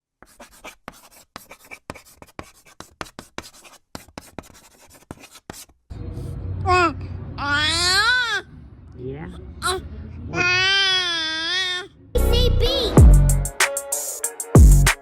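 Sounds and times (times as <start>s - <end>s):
scratchy clicks and rubbing: 0.2s - 5.8s.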